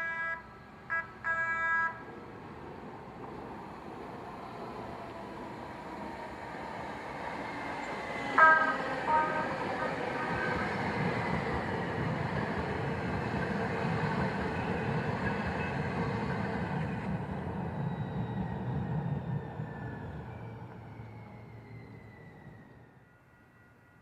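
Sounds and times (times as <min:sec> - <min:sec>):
train warning signals: 0:00.0 - 0:02.1, 0:07.6 - 0:11.6
train rumble: 0:00.0 - 0:23.2.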